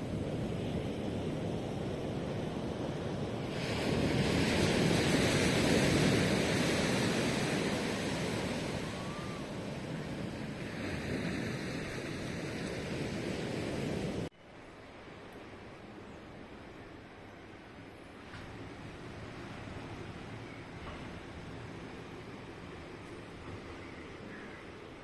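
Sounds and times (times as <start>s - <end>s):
ocean surf washing on shore: 0.0s - 14.3s.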